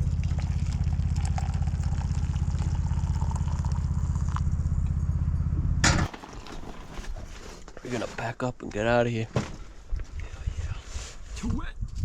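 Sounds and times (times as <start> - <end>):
engine idling: 0.0 - 7.7.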